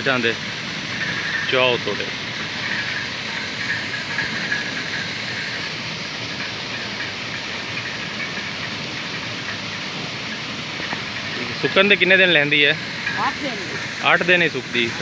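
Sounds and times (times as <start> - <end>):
engine running: 0.0 - 15.0
thresher hissing rush: 0.0 - 15.0.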